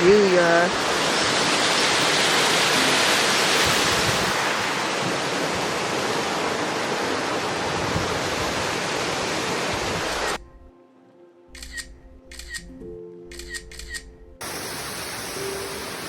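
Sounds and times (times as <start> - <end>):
waterfall roaring: 0.0 - 10.4, 14.4 - 16.0.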